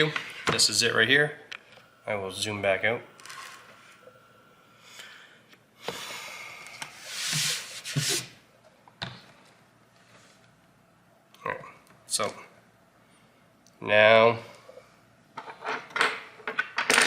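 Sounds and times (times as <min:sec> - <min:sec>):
handling rubbing hiss: 0:06.9 - 0:08.3.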